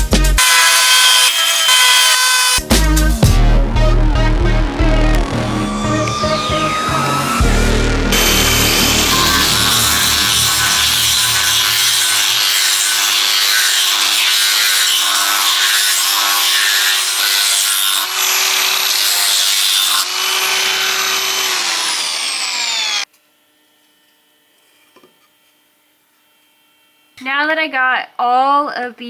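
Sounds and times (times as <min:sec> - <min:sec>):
power sander on wood: 0:00.4 - 0:23.1.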